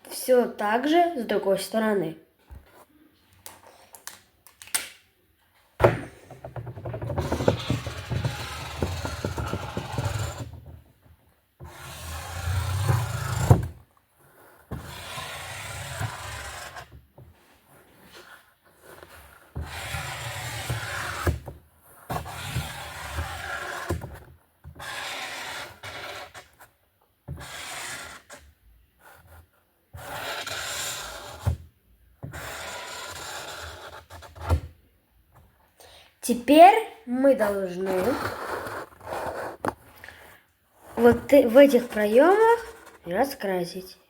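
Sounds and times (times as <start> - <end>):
marker scratching on cardboard: 7.2 - 10.6, 14.7 - 17.0, 22.2 - 24.0, 24.8 - 26.6, 27.3 - 29.4, 30.0 - 31.5, 32.3 - 34.5, 37.9 - 39.7.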